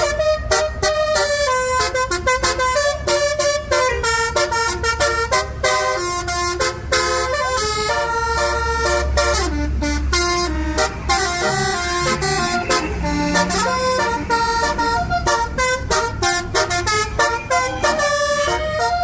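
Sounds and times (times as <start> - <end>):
bus engine rumble: 0.0 - 19.0
bus musical horn melody: 0.0 - 19.0.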